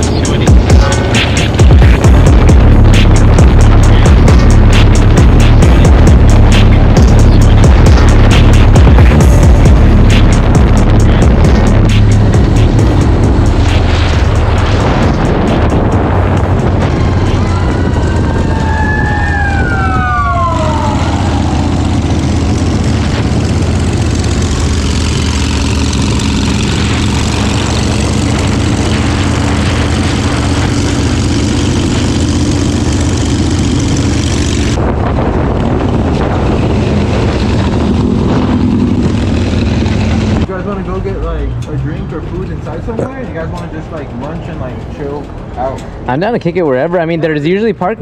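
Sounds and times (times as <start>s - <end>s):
motorcycle engine running: 0.0s - 48.0s
siren wailing: 13.5s - 24.0s.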